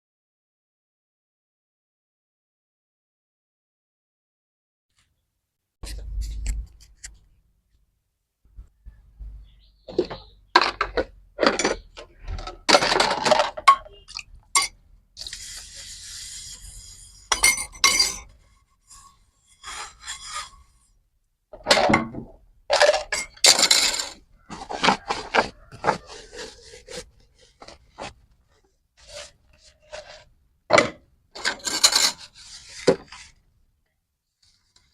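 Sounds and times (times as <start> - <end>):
dishes clinking and scraping: 9.9 - 15.4, 17.2 - 20.8, 21.6 - 28.1, 29.1 - 33.2.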